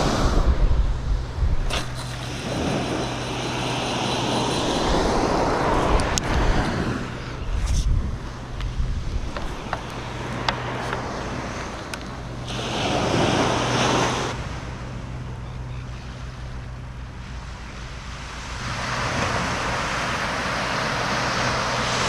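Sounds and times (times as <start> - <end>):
sea waves washing in: 0.0 - 0.8, 1.7 - 15.4, 16.0 - 22.0
wind buffeting microphone: 0.0 - 14.8.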